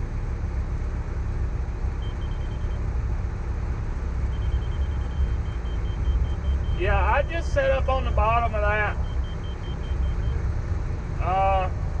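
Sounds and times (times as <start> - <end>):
diesel machine rumbling: 0.0 - 12.0
rapid high-pitched beeps: 2.0 - 2.8, 4.3 - 10.4.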